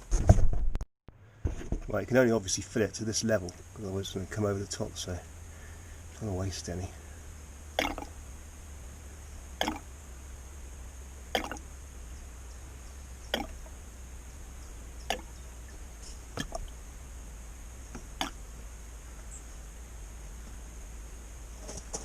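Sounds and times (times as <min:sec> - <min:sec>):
low steady hum: 0:01.1 - 0:22.0
fluid drops dripping: 0:07.7 - 0:08.2, 0:09.6 - 0:09.9, 0:11.3 - 0:11.7, 0:13.3 - 0:13.7, 0:15.0 - 0:15.3.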